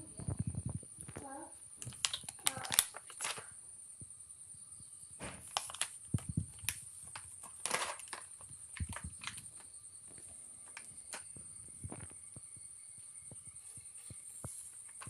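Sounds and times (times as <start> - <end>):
small clicks: 1.0 - 3.5
plastic packet crinkling: 1.8 - 3.5, 5.4 - 9.6.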